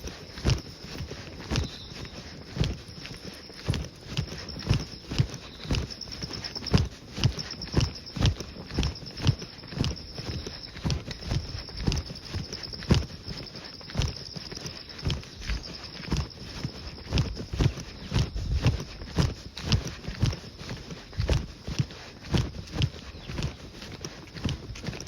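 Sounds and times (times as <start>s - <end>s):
insects trilling: 0.0s - 18.5s
footsteps walking: 0.0s - 25.0s.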